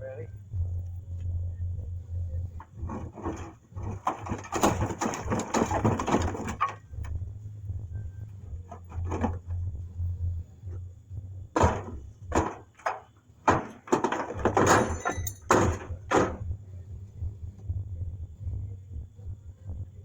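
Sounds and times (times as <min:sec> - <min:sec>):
steady low hum: 0:00.0 - 0:20.0
tools clanking on sheet metal: 0:11.6 - 0:16.3.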